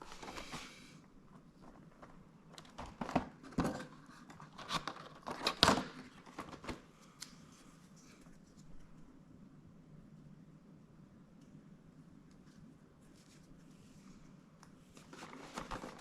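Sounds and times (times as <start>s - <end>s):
cardboard packaging rustling and tearing: 2.7s - 6.8s, 15.0s - 16.0s.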